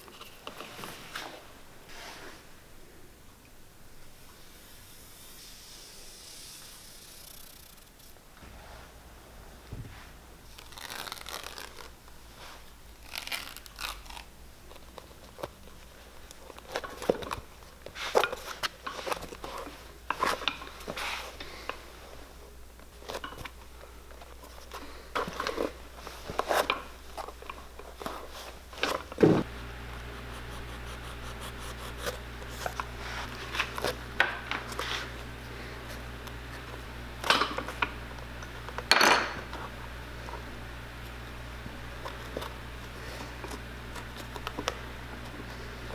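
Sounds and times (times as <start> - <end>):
tools and leather clicking and scraping: 13.0 - 21.8, 22.8 - 36.7
low machine hum: 29.0 - 45.9.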